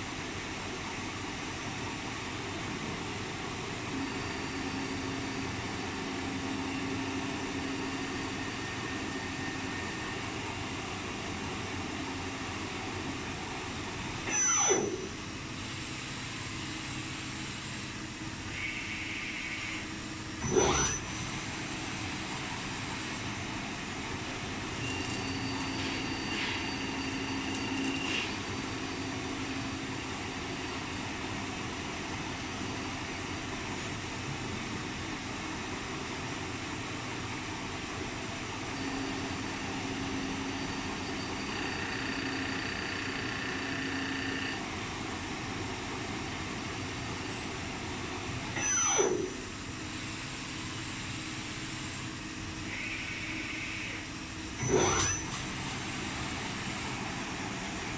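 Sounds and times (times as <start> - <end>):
machine and coolant noise: 0.0 - 57.9
high cutting whine: 18.5 - 29.8, 51.4 - 57.9.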